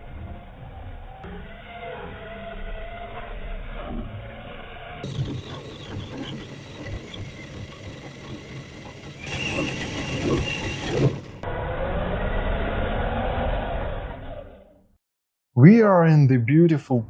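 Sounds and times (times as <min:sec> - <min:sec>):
electric motor whine: 0:00.1 - 0:14.5
mechanical clatter: 0:05.0 - 0:11.4.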